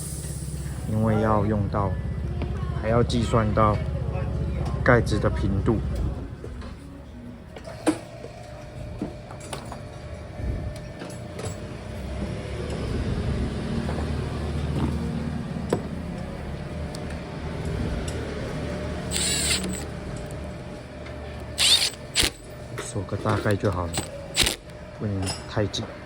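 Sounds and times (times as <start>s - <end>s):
engine rumble: 0.0s - 7.6s, 11.5s - 22.9s.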